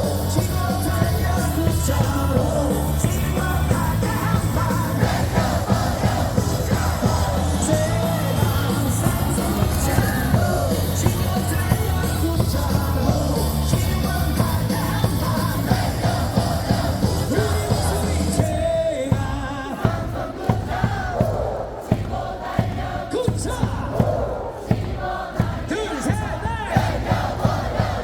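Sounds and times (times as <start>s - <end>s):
loudspeaker music with heavy beat: 0.0s - 21.4s
crowd cheering: 0.0s - 28.0s
crowd singing and shouting: 0.0s - 28.0s.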